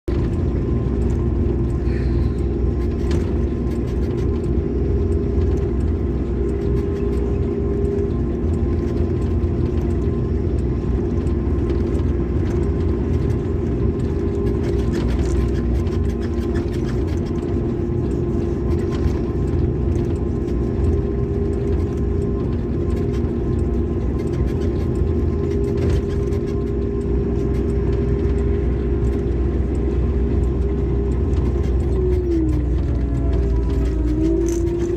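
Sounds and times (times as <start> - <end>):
excavator engine running: 0.1 - 34.9.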